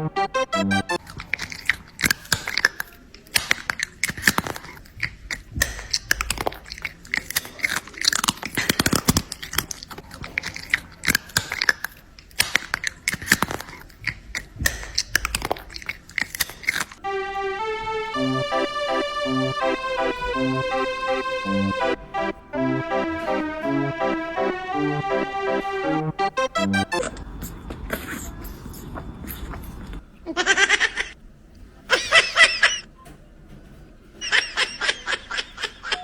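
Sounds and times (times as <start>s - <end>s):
keyboard music: 0.0s - 1.0s, 17.0s - 27.6s.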